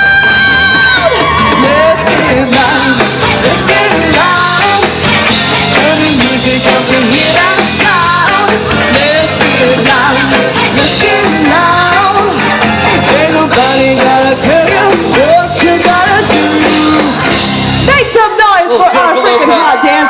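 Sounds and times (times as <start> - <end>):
person singing: 0.0 - 17.4
live band playing upbeat music: 0.0 - 20.0.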